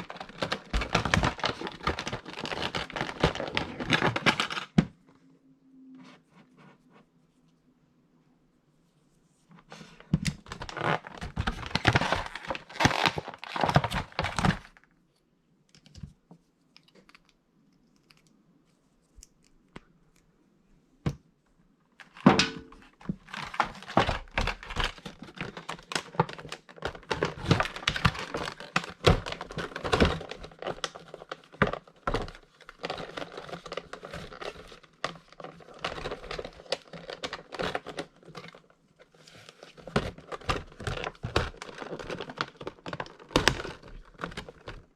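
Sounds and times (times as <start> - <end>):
packaging crinkling: 0.0 - 4.8, 10.4 - 14.9, 23.1 - 44.9.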